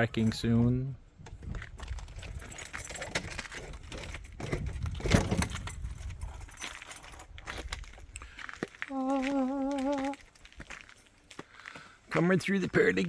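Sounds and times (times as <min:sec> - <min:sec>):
light metallic jingling: 0:00.0 - 0:00.8, 0:01.8 - 0:08.2, 0:09.7 - 0:11.3.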